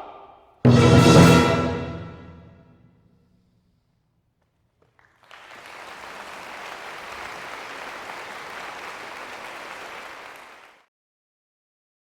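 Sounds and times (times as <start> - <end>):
audience applause: 4.8 - 10.8.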